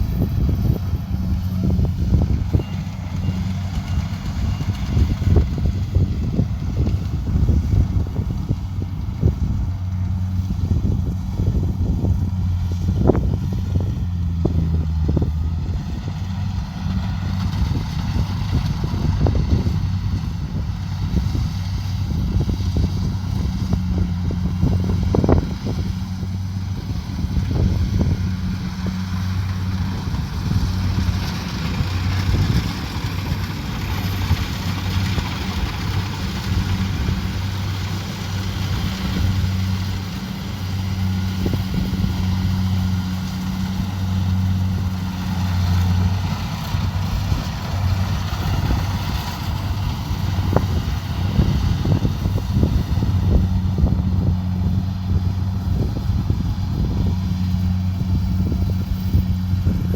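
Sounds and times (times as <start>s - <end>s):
combine harvester engine hum: 0.0s - 59.9s
rushing machine noise: 14.4s - 59.9s.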